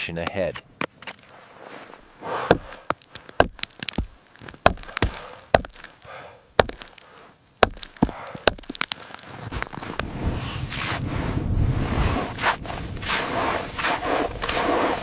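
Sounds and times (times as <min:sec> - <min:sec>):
ice chopping blows: 0:02.2 - 0:11.1.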